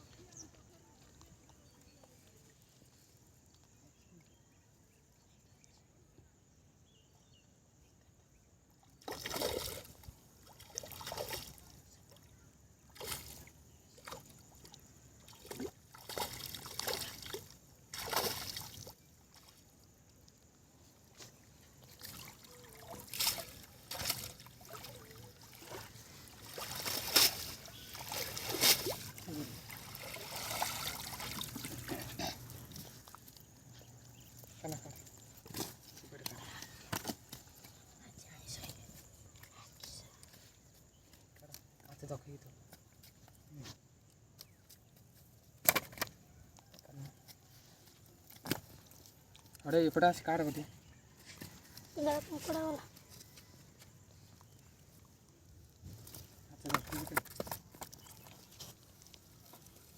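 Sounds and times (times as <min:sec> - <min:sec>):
water splashing and sloshing: 0:08.8 - 0:37.7, 0:54.1 - 0:59.9.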